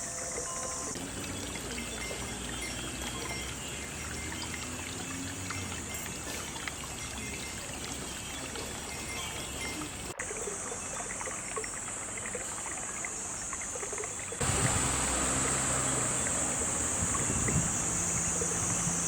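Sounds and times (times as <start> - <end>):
wind bells tinkling: 0.0 - 10.2
trickling water: 0.0 - 19.0
high steady hiss: 8.6 - 19.0.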